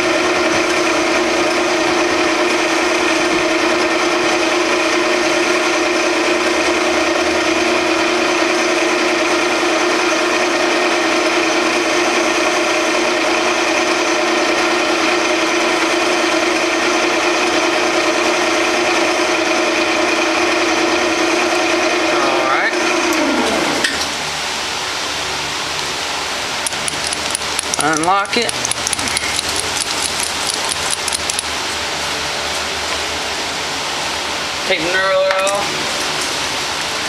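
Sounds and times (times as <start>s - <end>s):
metal lathe humming: 0.0s - 24.4s.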